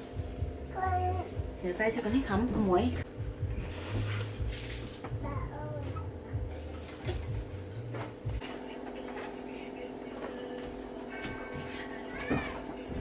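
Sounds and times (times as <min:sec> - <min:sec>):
low dull thumps and rumbles: 0:00.0 - 0:08.4
crickets chirping: 0:00.0 - 0:13.0.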